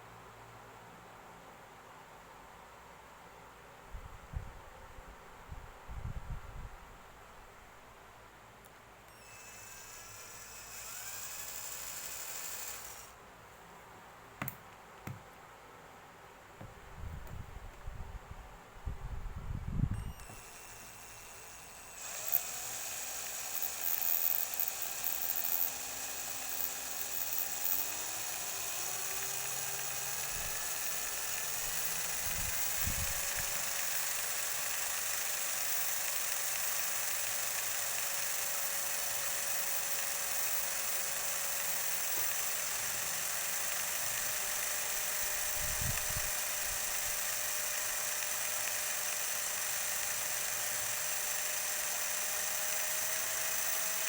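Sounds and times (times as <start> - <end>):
small electric motor whining: 9.1 - 13.2, 19.9 - 54.0.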